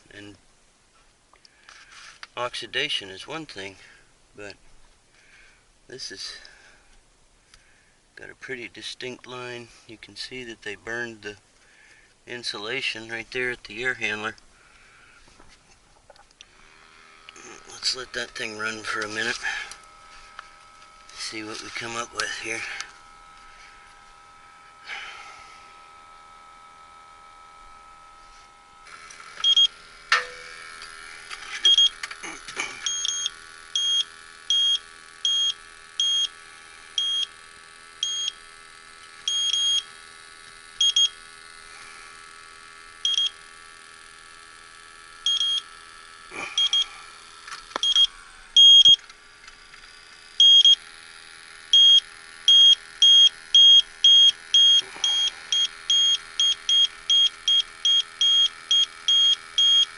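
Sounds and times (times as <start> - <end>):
steady mechanical hum: 0.0 - 59.9
leak detector beeping: 16.4 - 59.9.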